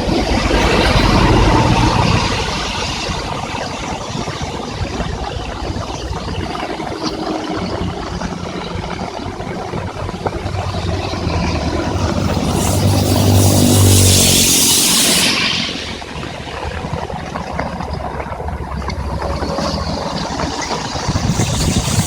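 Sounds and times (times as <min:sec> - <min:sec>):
traffic passing on wet road: 0:00.0 - 0:22.0
tyres hissing on wet road: 0:00.0 - 0:22.0
rain: 0:13.2 - 0:21.2.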